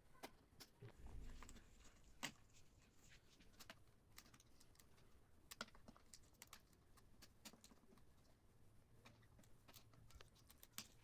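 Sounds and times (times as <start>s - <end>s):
small clicks and taps on plastic: 0.2s - 1.6s, 3.3s - 8.4s, 9.0s - 11.0s.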